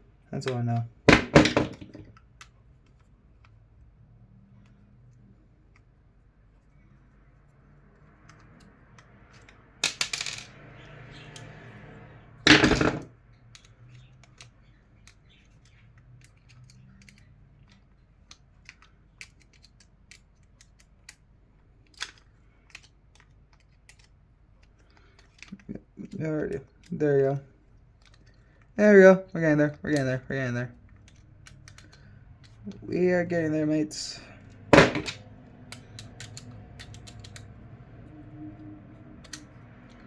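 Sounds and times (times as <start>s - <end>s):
loud knock: 1.1s - 2.0s, 34.8s - 35.2s
fan parts clicking and clattering: 27.8s - 37.7s.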